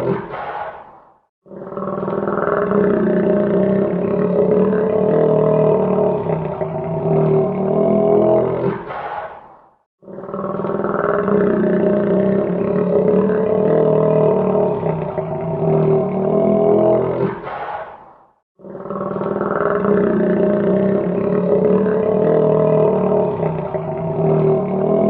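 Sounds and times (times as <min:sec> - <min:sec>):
alligator bellowing: 0:01.4 - 0:09.4, 0:10.0 - 0:18.0, 0:18.6 - 0:25.0.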